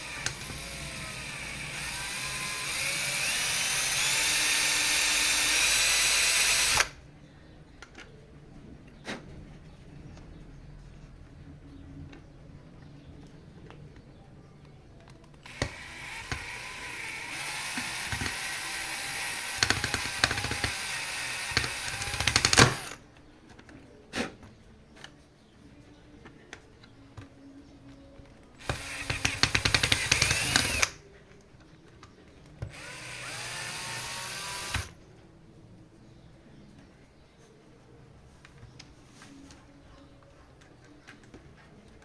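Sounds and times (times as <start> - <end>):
cordless drill driving screws: 0.0 - 6.9, 15.4 - 23.0, 28.6 - 31.0, 32.7 - 35.0.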